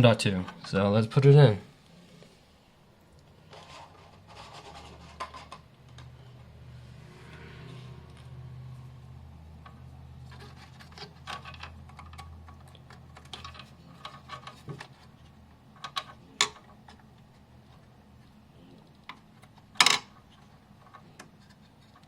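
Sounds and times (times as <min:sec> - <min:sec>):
low hum: 0:05.7 - 0:11.0.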